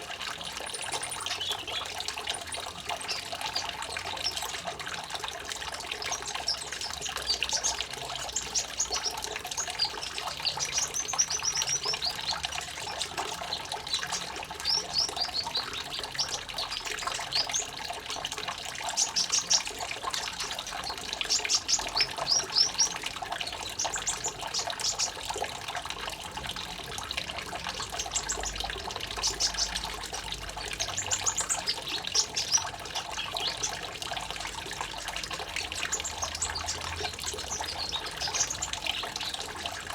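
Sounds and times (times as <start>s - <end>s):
songbird chirping and trilling: 0.0s - 25.6s, 27.6s - 39.9s
water trickling: 0.0s - 39.9s.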